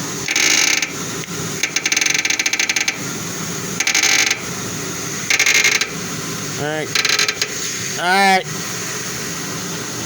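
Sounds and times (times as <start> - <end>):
steering linkage rapid clicking: 0.2 - 1.0, 1.6 - 3.0, 3.8 - 4.4, 5.3 - 6.0, 6.9 - 7.6.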